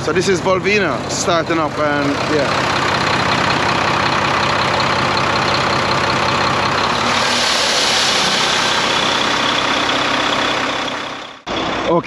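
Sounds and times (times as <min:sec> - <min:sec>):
diesel engine idling: 0:00.0 - 0:12.0
rushing air noise: 0:06.9 - 0:11.2.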